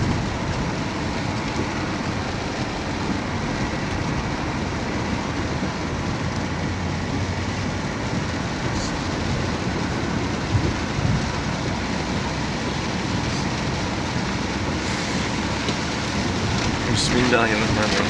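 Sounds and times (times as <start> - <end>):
heavy rain pouring: 0.0 - 18.0.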